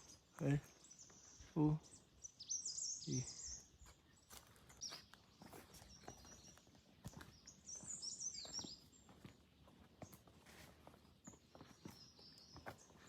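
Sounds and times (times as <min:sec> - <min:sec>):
faint small-bird chirps: 0:00.0 - 0:13.0
soft footsteps on trail: 0:00.0 - 0:13.0.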